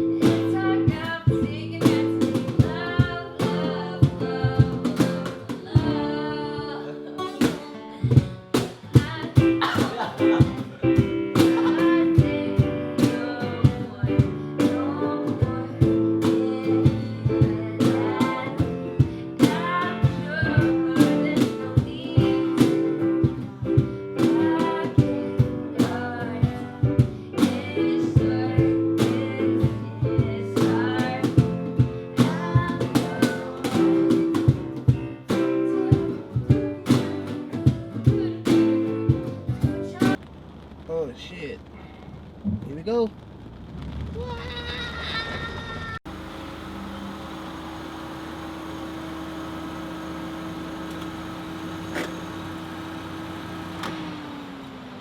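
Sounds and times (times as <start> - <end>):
acoustic guitar playing: 0.0 - 40.2
cajon beat: 0.0 - 40.3.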